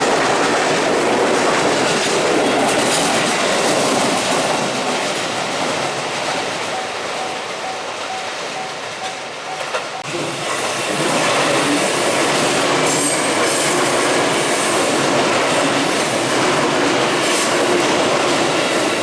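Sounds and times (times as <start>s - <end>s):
train wheels clattering on rail joints: 0.0s - 19.0s
level crossing warning bell ringing: 6.3s - 10.5s.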